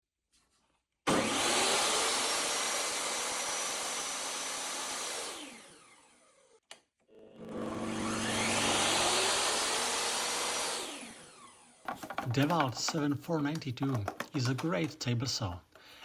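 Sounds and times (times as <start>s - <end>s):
table saw running: 1.1s - 6.3s, 7.2s - 13.2s.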